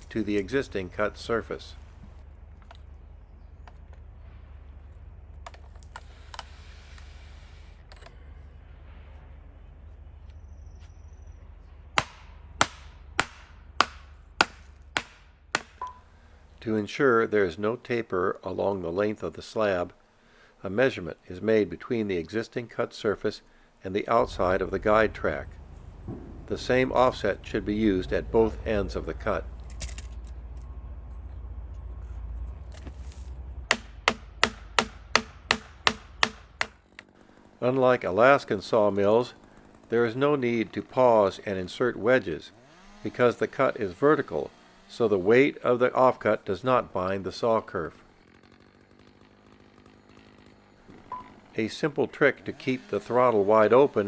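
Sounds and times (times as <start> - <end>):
low steady hum: 0.0 - 36.9.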